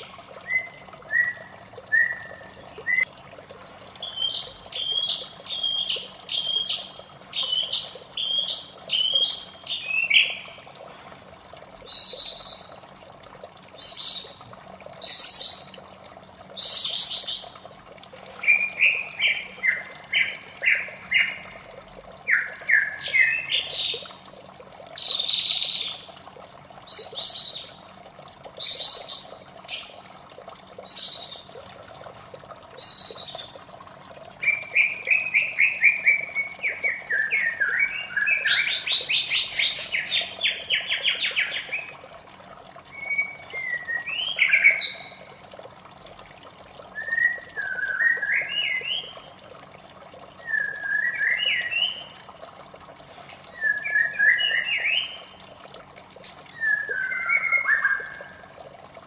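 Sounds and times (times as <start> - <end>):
running water: 0.0 - 59.0
bird singing whistled trills: 0.4 - 3.1, 4.0 - 10.4, 11.8 - 12.8, 32.8 - 33.6, 34.4 - 41.9, 42.9 - 45.2, 47.0 - 49.2, 50.4 - 52.1, 53.5 - 55.3, 56.5 - 58.4.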